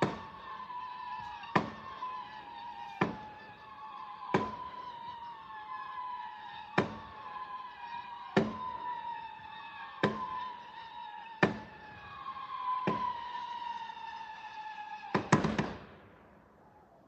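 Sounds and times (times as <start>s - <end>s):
fireworks bangs: 0.0s - 16.4s.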